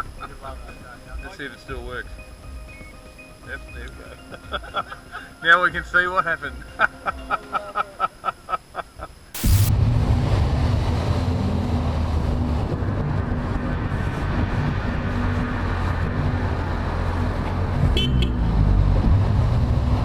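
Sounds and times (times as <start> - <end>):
road and wind noise: 0.0 - 4.5, 9.2 - 20.0
vehicle engine running: 9.4 - 20.0.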